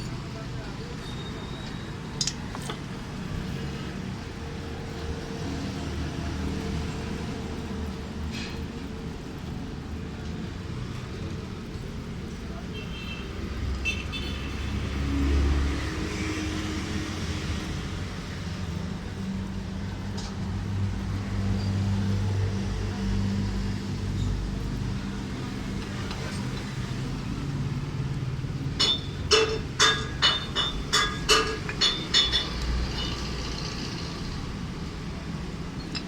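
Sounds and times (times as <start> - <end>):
sharp metallic clinks: 28.6 - 34.6.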